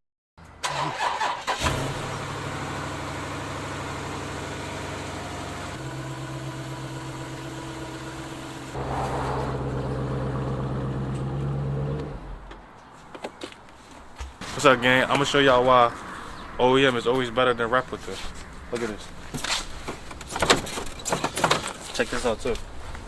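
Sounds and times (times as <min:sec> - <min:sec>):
car engine idling: 0:01.7 - 0:12.4.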